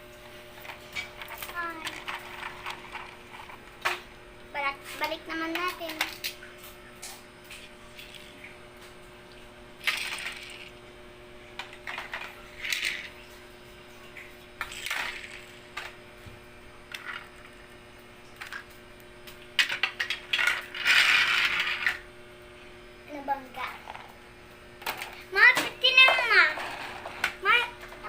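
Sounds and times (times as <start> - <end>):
plastic toys clattering: 0.6 - 4.0, 5.0 - 6.4, 9.8 - 10.7, 11.6 - 13.1, 14.6 - 15.9, 16.9 - 17.6, 19.6 - 22.0, 24.8 - 28.0.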